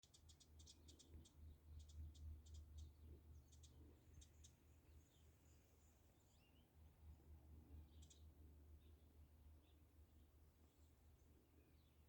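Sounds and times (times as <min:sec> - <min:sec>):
faint high-pitched ticks: 0:00.0 - 0:05.5, 0:07.8 - 0:08.4.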